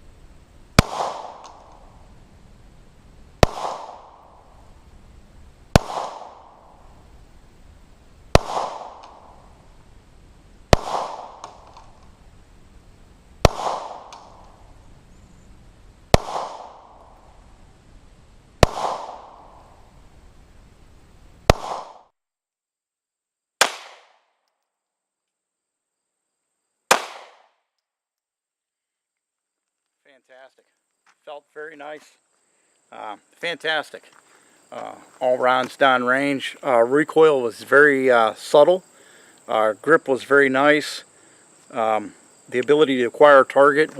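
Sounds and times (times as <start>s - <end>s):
pistol shots with echo: 0.8s - 1.7s, 3.4s - 4.4s, 5.7s - 6.6s, 8.3s - 9.4s, 10.7s - 11.9s, 13.4s - 14.4s, 16.1s - 17.0s, 18.6s - 19.6s, 21.5s - 22.0s, 23.6s - 24.1s, 26.9s - 27.4s.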